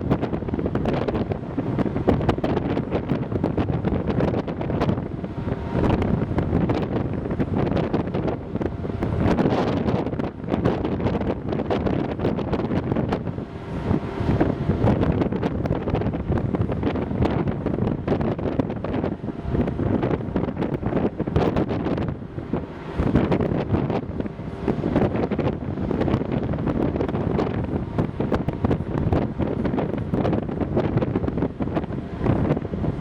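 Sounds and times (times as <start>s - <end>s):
faint engine hum: 0.0s - 33.0s
wind buffeting microphone: 0.0s - 33.0s.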